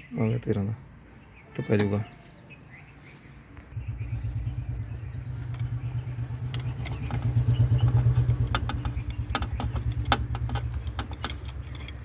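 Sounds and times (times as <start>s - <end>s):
low fast-pulsing mechanical hum: 3.7s - 11.2s
tools clinking on metal: 7.8s - 12.0s.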